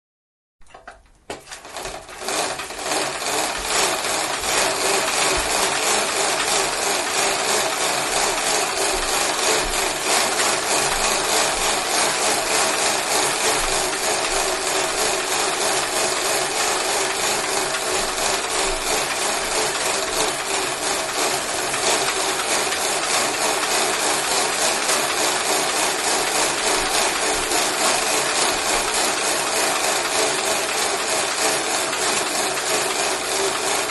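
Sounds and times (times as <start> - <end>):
exercise bike wheel whirring: 0.7 - 33.9.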